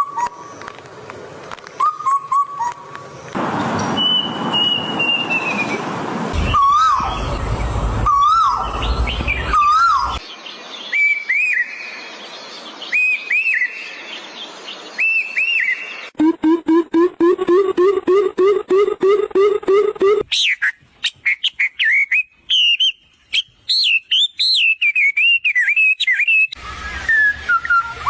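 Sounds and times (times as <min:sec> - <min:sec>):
falling bird whistle: 0:03.8 - 0:05.8, 0:06.4 - 0:10.2, 0:16.5 - 0:28.0
low rumble: 0:06.3 - 0:09.6.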